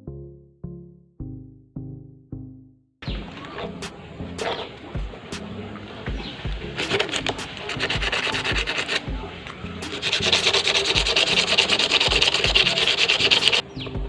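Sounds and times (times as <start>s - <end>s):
faint background music: 3.0s - 14.0s
sanding metal: 6.8s - 9.1s, 9.8s - 13.6s.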